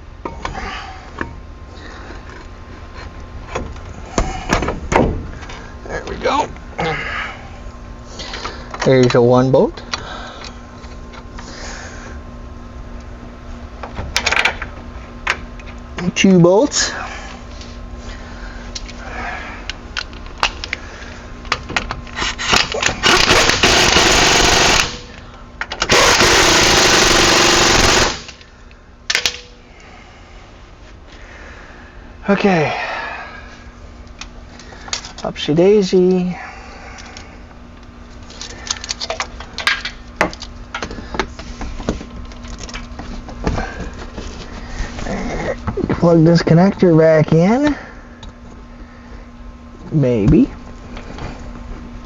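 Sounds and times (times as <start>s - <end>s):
faint steady hum: 0.0s - 52.0s
impact wrench running: 22.5s - 25.2s, 25.8s - 28.4s.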